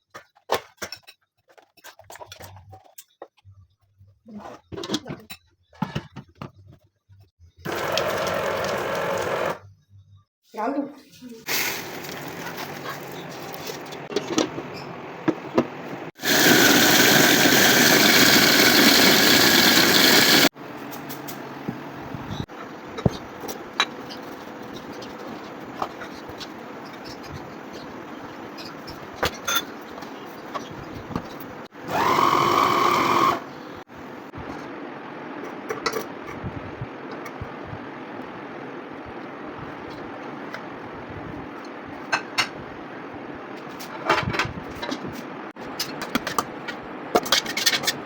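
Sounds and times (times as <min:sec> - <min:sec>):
electric grinder motor whining: 0:16.2 - 0:20.5, 0:31.9 - 0:33.5.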